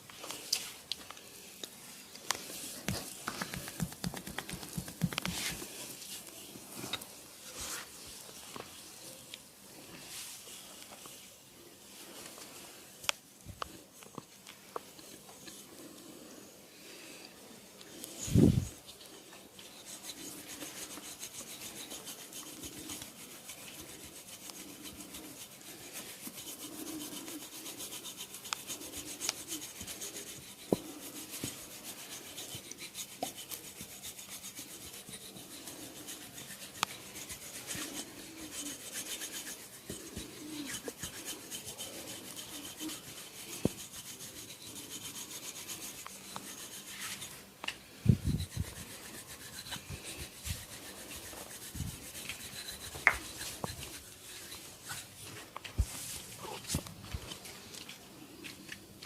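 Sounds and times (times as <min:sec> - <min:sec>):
hands rubbing skin: 0:02.3 - 0:07.0, 0:19.7 - 0:47.4, 0:48.3 - 0:58.5.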